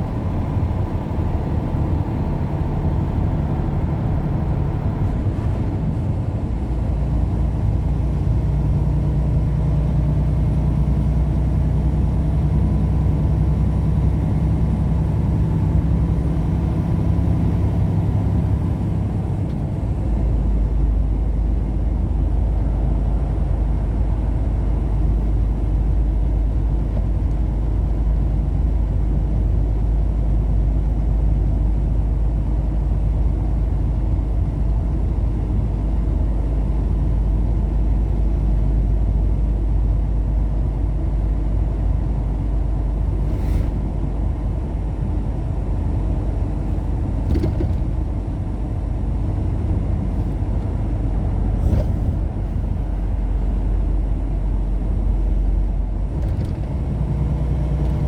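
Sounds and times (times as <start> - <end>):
car road and engine noise: 0.0 - 58.0.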